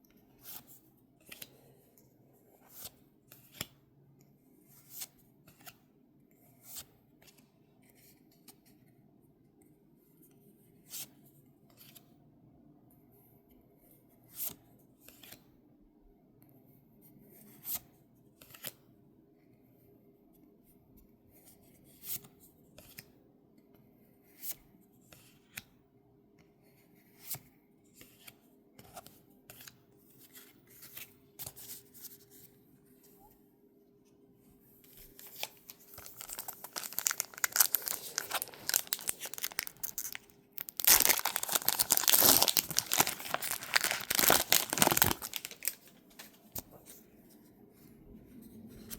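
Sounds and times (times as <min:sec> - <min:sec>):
foil wrapper crinkling and tearing: 0:35.2 - 0:45.9.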